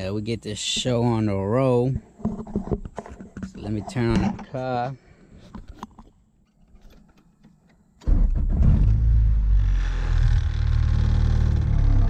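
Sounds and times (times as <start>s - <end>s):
car engine starting and idling: 8.0s - 12.0s.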